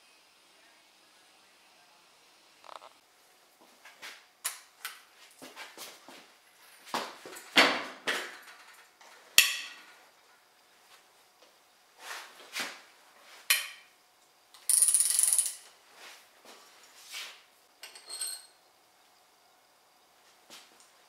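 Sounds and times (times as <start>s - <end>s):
clinks and knocks of metal parts: 7.3s - 10.0s, 14.6s - 15.7s, 17.8s - 18.6s
ratchet wrench clicking: 14.6s - 15.7s.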